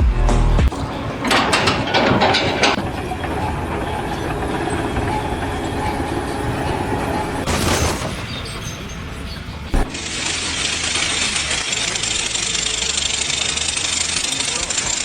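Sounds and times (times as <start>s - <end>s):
mechanical rattling and clatter: 0.7s - 8.7s, 9.7s - 15.0s
sharp knock: 9.8s - 10.4s
hissing rattle: 9.8s - 15.0s.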